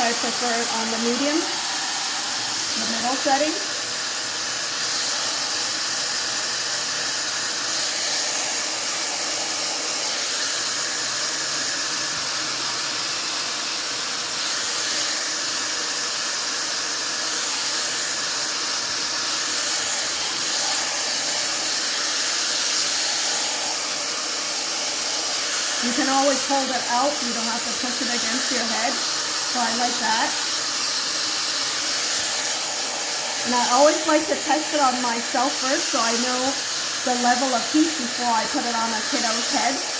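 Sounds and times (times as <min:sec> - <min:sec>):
hair dryer air rushing: 0:00.0 - 0:39.9
fan hum: 0:19.6 - 0:39.9.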